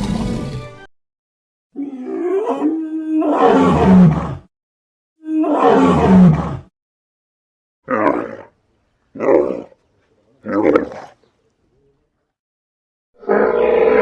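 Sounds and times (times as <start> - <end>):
dinosaur roar: 1.8 - 4.5, 5.3 - 6.7, 7.9 - 8.5, 9.2 - 11.3, 13.2 - 14.0.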